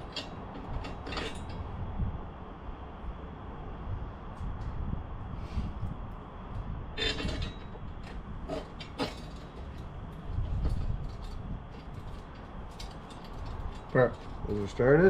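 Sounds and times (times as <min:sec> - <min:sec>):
metal bolts clicking: 0:00.0 - 0:01.6
low steady rumble: 0:00.0 - 0:15.0.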